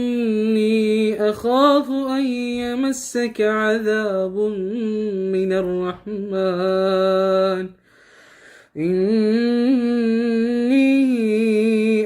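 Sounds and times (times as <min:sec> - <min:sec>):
man chanting recitation: 0:00.0 - 0:07.8.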